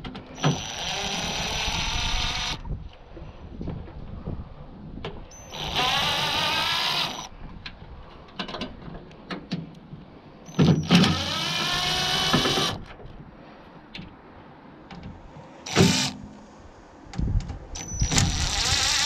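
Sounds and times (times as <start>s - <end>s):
power drill whining: 0.4s - 2.6s, 5.4s - 7.3s, 10.8s - 12.8s, 15.7s - 16.2s, 17.8s - 19.0s.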